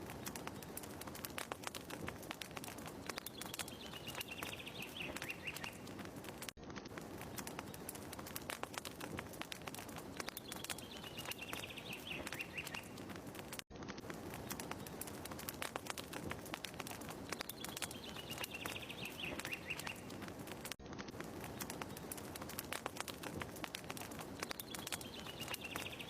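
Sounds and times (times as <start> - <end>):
wood fire crackling: 0.0 - 26.0
bird chirping trill: 3.1 - 5.9, 10.2 - 13.0, 17.3 - 20.2, 24.4 - 26.0.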